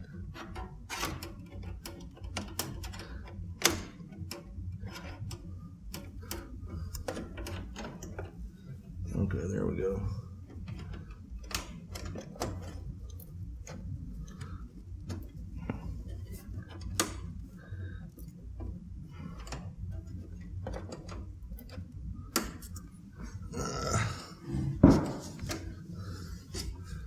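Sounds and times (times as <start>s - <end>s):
low steady hum: 0.0s - 27.0s
clicks and knocks of computer parts: 0.3s - 8.4s, 10.5s - 17.3s.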